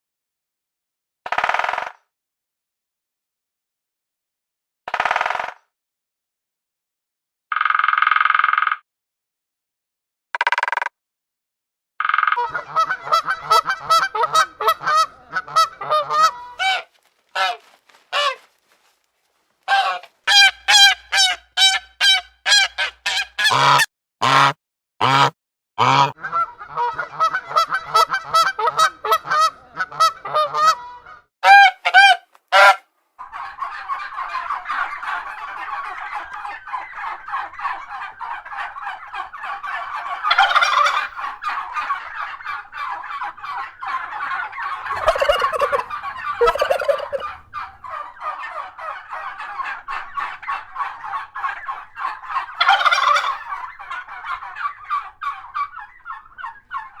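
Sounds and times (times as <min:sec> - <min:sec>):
flock gabble of calls: 0:12.4 - 0:19.0, 0:33.2 - 0:57.0
birds honking: 0:12.4 - 0:32.8, 0:33.4 - 0:57.0.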